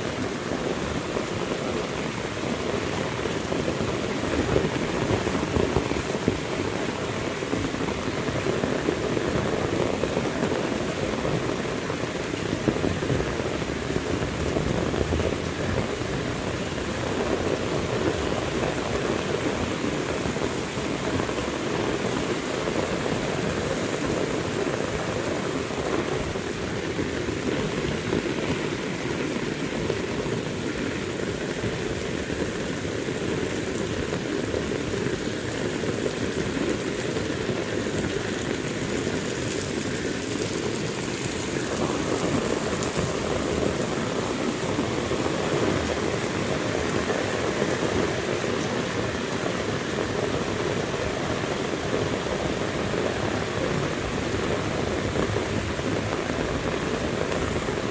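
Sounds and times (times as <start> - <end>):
heavy rain pattering: 0.0 - 57.9.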